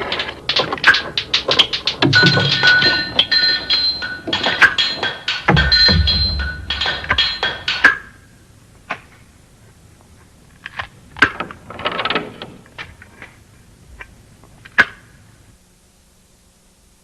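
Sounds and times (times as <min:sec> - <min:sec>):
sharp electronic clicks and knocks: 0:00.0 - 0:08.1
low hum: 0:05.5 - 0:07.8.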